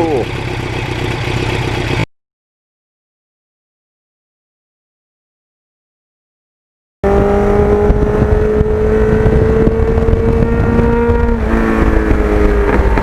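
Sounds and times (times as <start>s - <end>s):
motorcycle engine accelerating: 7.0s - 13.0s
wind rumble on microphone: 7.0s - 13.0s.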